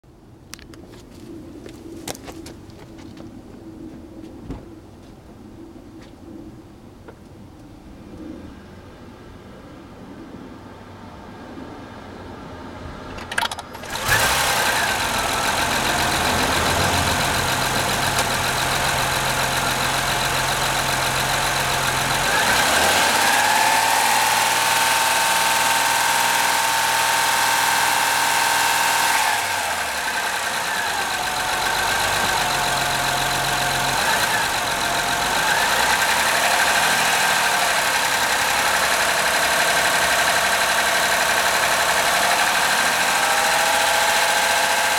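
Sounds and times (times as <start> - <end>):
car engine starting and running: 12.8 - 44.9.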